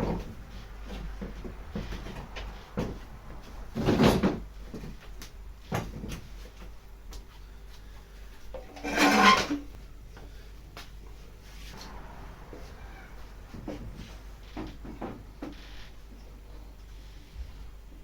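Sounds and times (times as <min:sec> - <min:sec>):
panels scraping: 0:00.0 - 0:05.0, 0:08.7 - 0:09.7, 0:11.5 - 0:16.1.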